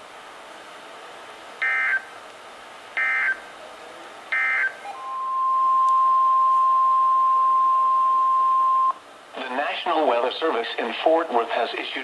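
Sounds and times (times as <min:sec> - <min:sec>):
loud steady alert tone: 0:01.6 - 0:02.1, 0:03.0 - 0:03.5, 0:04.3 - 0:09.0.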